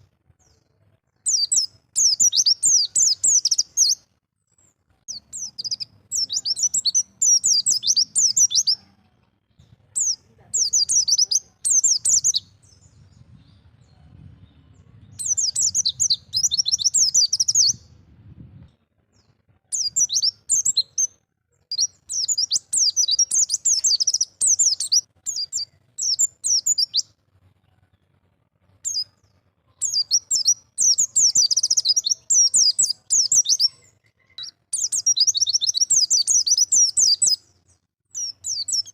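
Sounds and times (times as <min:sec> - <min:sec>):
bird twittering: 0:01.3 - 0:04.0, 0:05.1 - 0:08.8, 0:10.0 - 0:12.6, 0:15.2 - 0:17.8, 0:19.7 - 0:21.1, 0:21.7 - 0:27.0, 0:29.8 - 0:37.4, 0:38.2 - 0:38.9.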